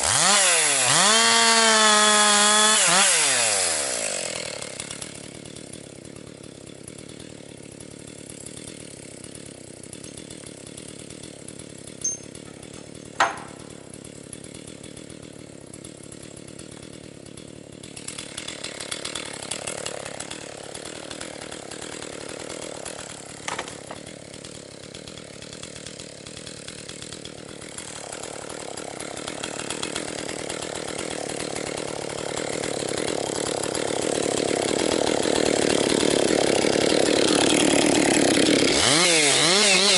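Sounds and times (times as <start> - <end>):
chainsaw cutting wood: 0.0 - 39.9
chainsaw running: 0.0 - 39.9
sharp knock: 13.2 - 13.6.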